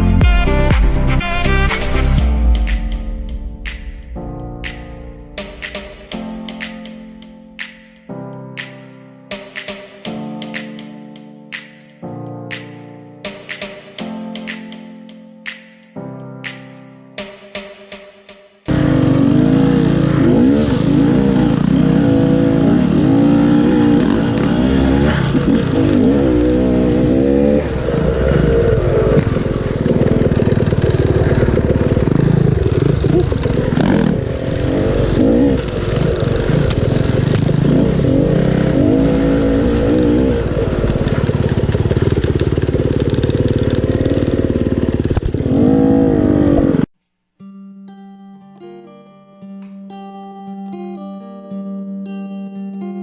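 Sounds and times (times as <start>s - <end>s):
dirt bike engine revving: 18.7s - 46.9s.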